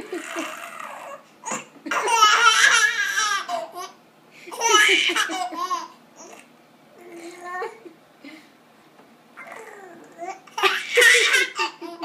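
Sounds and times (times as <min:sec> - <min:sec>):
baby giggling: 0:00.0 - 0:06.5, 0:09.4 - 0:12.0.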